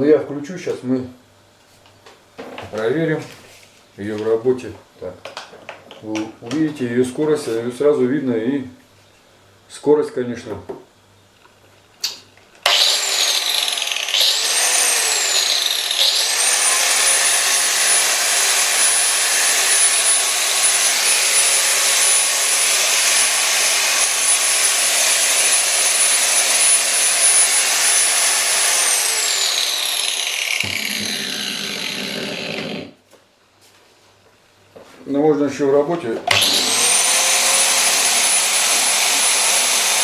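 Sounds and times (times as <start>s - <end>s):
angle grinder whining: 12.6s - 33.0s, 36.3s - 40.0s.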